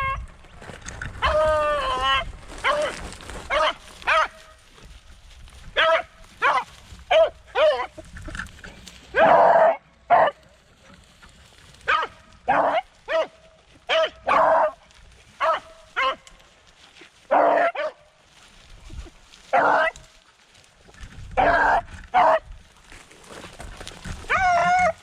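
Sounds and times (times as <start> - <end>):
dogs baying: 5.8 - 8.0, 15.4 - 16.2, 24.3 - 25.0.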